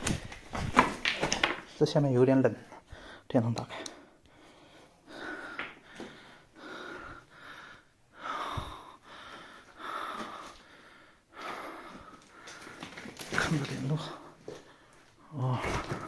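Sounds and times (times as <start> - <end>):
person breathing hard: 2.8 - 13.2, 14.0 - 16.0.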